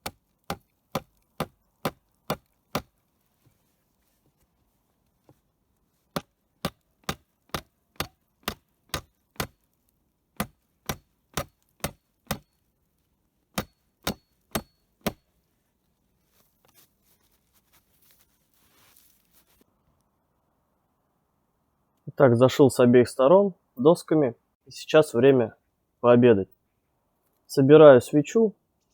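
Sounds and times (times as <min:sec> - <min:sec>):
hammer striking nails into wood: 0:00.0 - 0:02.9, 0:06.1 - 0:09.6, 0:10.4 - 0:12.5, 0:13.6 - 0:15.2.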